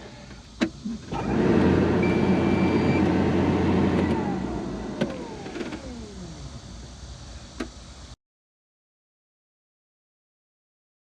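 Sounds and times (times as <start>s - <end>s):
motor humming: 0.8s - 7.7s
short high beep: 2.0s - 3.1s.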